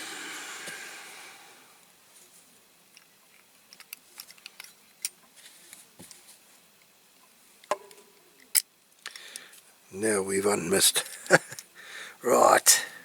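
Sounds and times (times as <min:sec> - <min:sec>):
soft hiss: 0:00.0 - 0:13.0
metal model parts clicking: 0:02.9 - 0:05.2.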